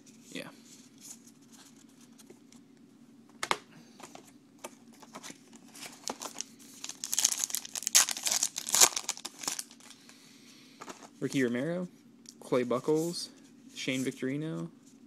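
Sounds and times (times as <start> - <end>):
wrapper crinkling: 5.7 - 10.0.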